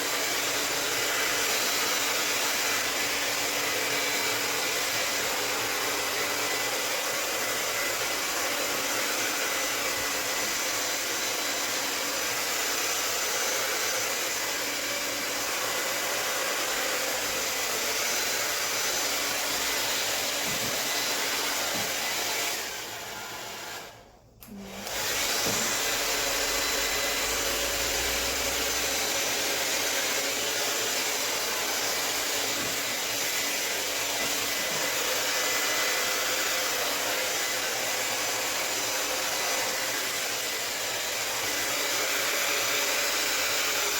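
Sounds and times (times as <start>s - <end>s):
hair dryer blowing: 0.0s - 43.9s.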